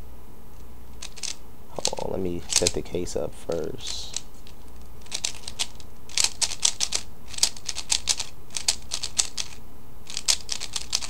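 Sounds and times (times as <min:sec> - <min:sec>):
puzzle cube plastic clicks: 0:01.0 - 0:02.8, 0:05.0 - 0:11.0.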